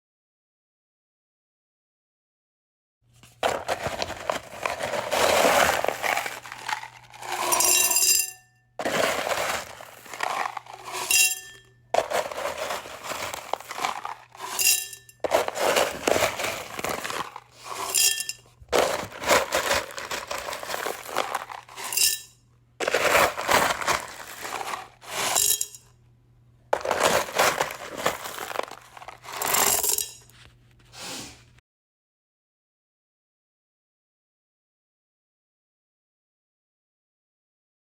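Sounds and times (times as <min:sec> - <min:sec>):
stones rattling into glass container: 0:03.4 - 0:25.8, 0:26.8 - 0:30.3
stones clinking on glass: 0:04.2 - 0:22.3, 0:23.9 - 0:25.8, 0:26.8 - 0:30.3.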